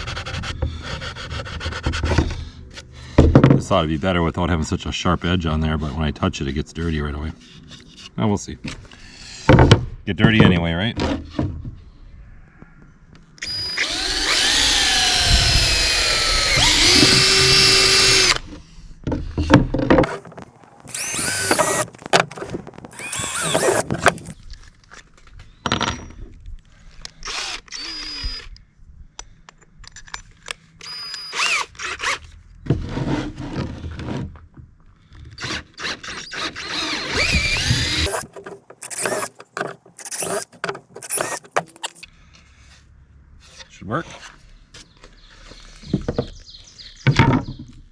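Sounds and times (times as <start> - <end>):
handheld power tool motor: 13.4 - 18.4, 20.0 - 24.4, 36.5 - 42.1.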